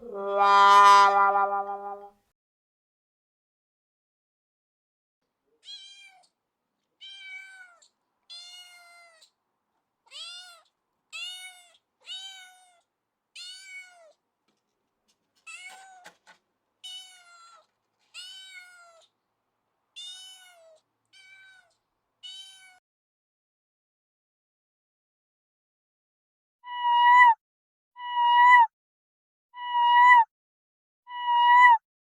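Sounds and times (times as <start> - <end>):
cat meowing: 5.6 - 6.3, 7.0 - 9.3, 10.1 - 12.8, 13.4 - 14.2, 15.4 - 16.2, 16.8 - 19.1, 20.0 - 22.8.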